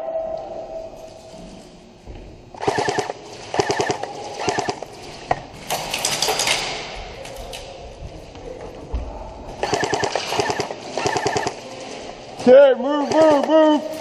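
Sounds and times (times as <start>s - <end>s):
airsoft gun bursts: 2.6s - 4.9s, 9.6s - 11.8s.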